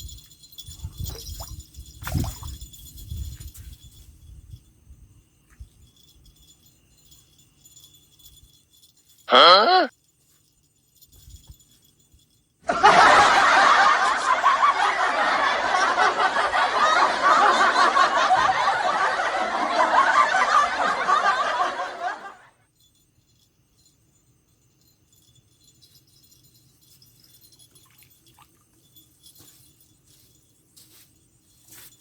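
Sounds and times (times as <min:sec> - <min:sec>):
crowd laughing: 0:12.6 - 0:22.5.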